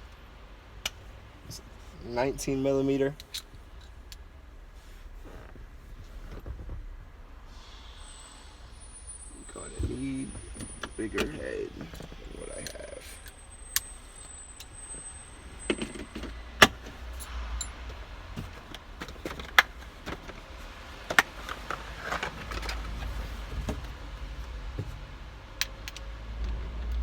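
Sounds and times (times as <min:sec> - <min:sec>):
metal tools clinking and rattling: 0:14.6 - 0:20.4.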